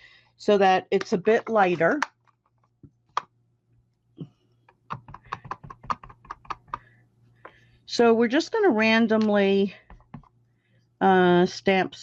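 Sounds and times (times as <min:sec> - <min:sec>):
rubber stamp tapping on ink pad: 0:04.7 - 0:06.9, 0:09.8 - 0:10.3.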